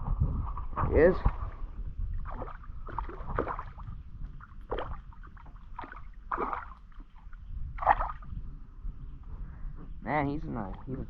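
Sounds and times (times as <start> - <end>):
steady low rumble: 0.0 - 11.0
fish splashing in water: 2.2 - 8.3.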